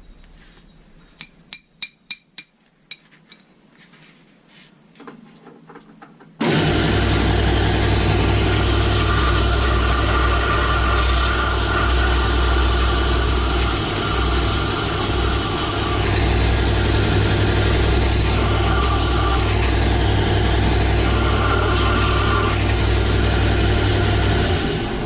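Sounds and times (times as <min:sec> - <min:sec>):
electric grinder grinding metal: 0:06.4 - 0:25.0.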